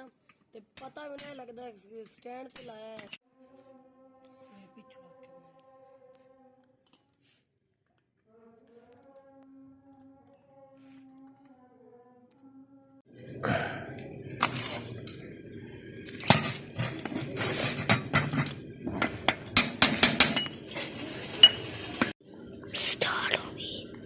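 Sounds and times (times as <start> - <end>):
faint hum: 9.2 - 19.7, 22.2 - 24.0.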